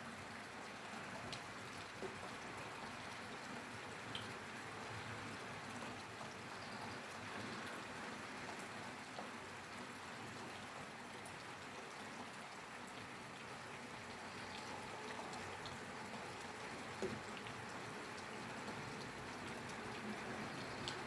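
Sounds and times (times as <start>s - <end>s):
steady rainfall hiss: 13.4s - 21.0s.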